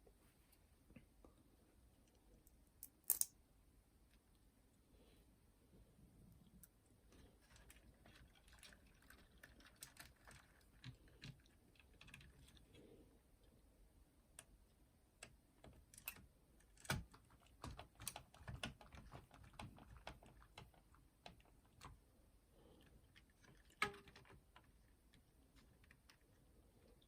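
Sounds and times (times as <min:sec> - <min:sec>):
small tools clicking and tapping: 0:02.8 - 0:03.3.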